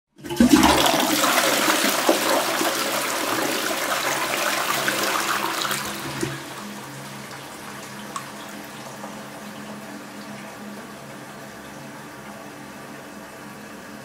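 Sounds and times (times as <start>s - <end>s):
toilet flushing: 0.1s - 14.0s.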